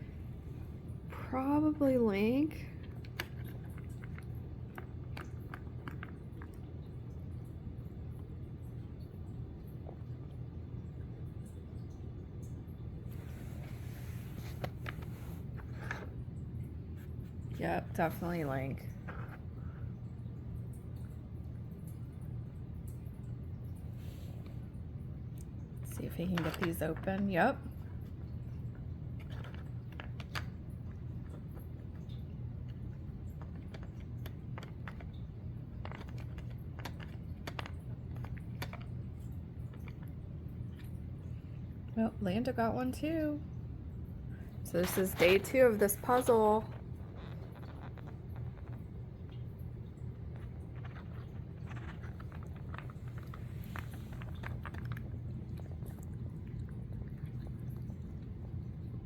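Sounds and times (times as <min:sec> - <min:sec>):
steady low hum: 0:00.0 - 0:59.0
cats clicking and tapping puzzle toy: 0:01.8 - 0:07.3, 0:25.4 - 0:27.8, 0:28.8 - 0:40.1, 0:44.7 - 0:58.5.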